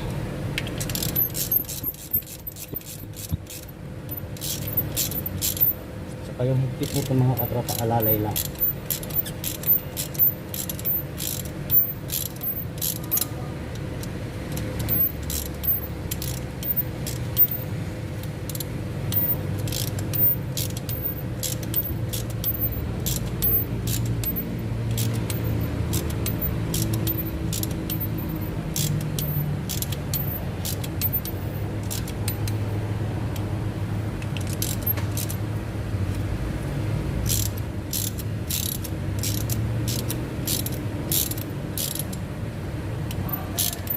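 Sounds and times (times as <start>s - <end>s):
steady low hum: 0.0s - 43.9s
hand tools clinking on metal: 6.7s - 13.3s, 43.1s - 43.9s.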